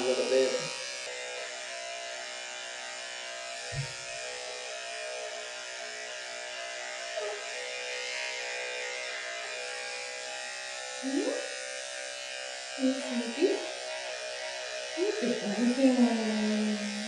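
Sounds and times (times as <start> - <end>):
electric clippers buzzing: 0.0 - 17.0
low thump: 3.7 - 4.0.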